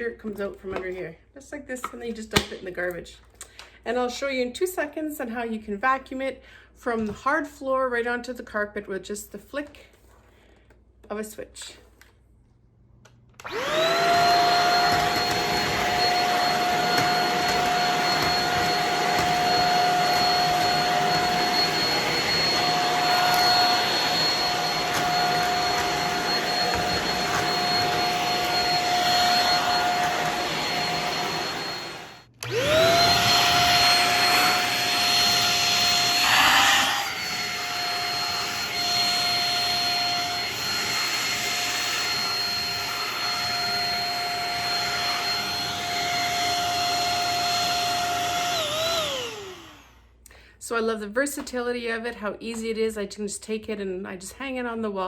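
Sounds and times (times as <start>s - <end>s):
vacuum cleaner motor whine: 13.4s - 50.1s.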